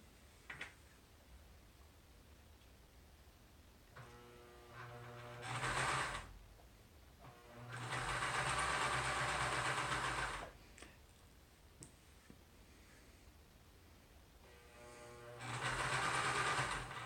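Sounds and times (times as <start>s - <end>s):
sewing machine stitching: 4.0s - 6.4s, 7.2s - 10.6s, 14.9s - 17.0s.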